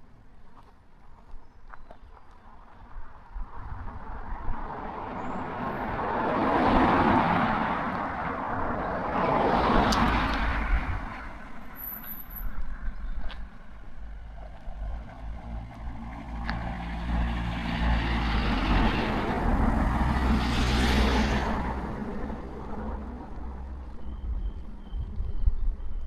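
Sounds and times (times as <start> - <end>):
vehicle passing with tyre noise: 2.8 - 26.0
low engine hum: 7.2 - 26.0.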